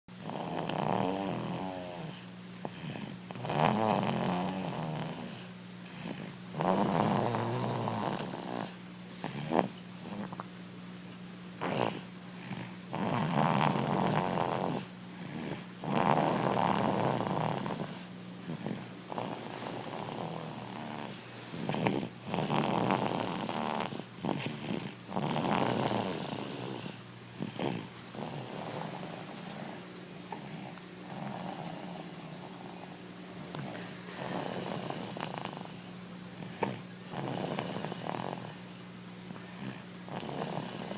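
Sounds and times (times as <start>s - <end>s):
steady low hum: 0.1s - 40.9s
loud snoring: 0.2s - 10.4s, 11.6s - 38.7s, 39.6s - 40.9s.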